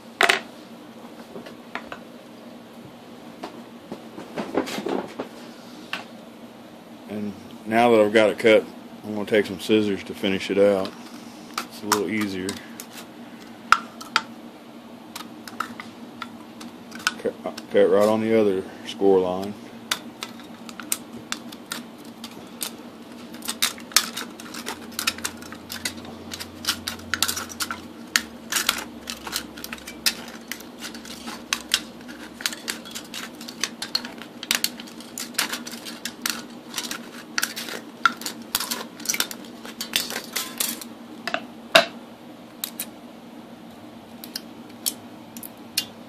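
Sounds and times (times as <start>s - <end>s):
scissors cutting metal can: 23.3s - 40.8s.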